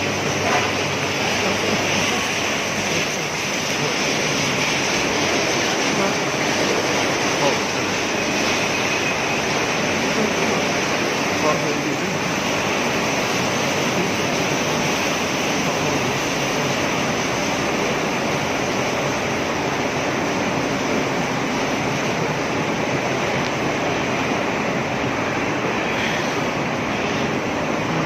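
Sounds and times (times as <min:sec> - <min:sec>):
welding machine hissing: 0:00.0 - 0:18.0.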